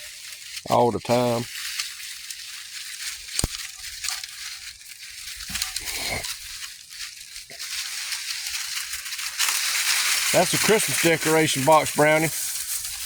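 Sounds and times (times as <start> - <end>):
puppies rustling through clutter: 0.0 - 13.0
sharp click: 3.4 - 3.6.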